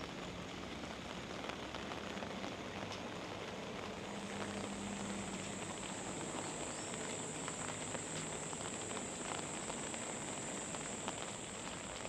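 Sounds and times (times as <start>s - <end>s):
light rain pattering: 0.0s - 12.0s.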